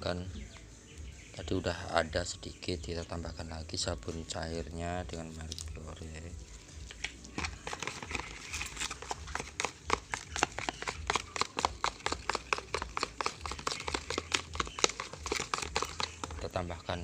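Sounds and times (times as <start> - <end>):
stirrer clicking against container: 7.4 - 16.6.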